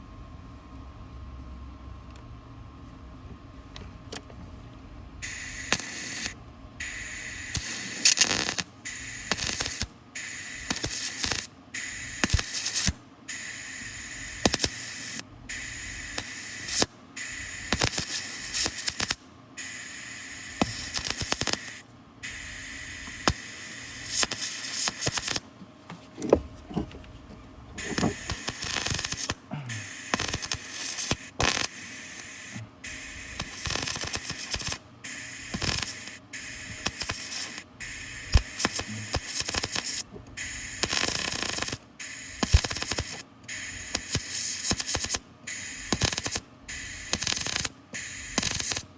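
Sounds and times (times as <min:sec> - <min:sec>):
welding arc crackling: 0:05.2 - 0:25.5, 0:27.8 - 0:48.9.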